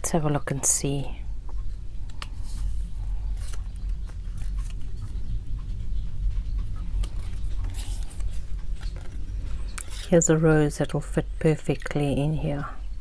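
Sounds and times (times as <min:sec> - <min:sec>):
steady low rumble: 0:00.0 - 0:13.0
paper rustling and shuffling: 0:02.2 - 0:05.1, 0:07.0 - 0:10.2.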